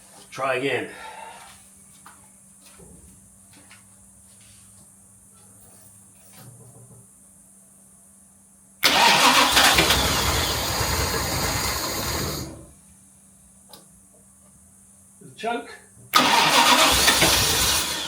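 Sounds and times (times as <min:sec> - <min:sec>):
engine cranking on starter motor: 0:08.8 - 0:12.7, 0:16.1 - 0:18.0
small click: 0:13.7 - 0:13.9.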